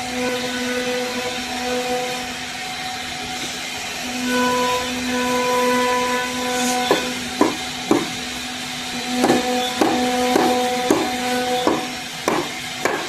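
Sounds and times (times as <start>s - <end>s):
machine hum: 0.0s - 13.0s
sharp knocks: 6.9s - 8.2s, 9.2s - 13.0s.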